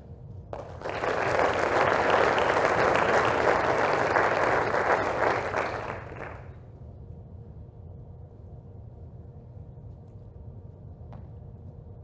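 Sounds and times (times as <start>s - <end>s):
audience applauding: 0.6s - 6.6s.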